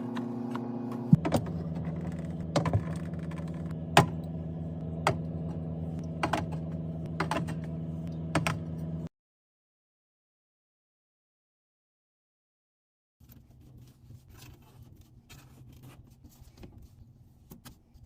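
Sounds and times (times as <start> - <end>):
low steady drone: 0.0 - 9.1.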